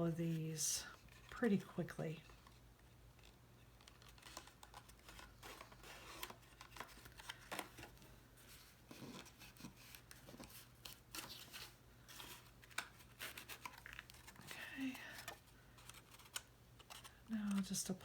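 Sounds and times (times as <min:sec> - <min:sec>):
card stock rustling and tapping: 0:02.3 - 0:18.0.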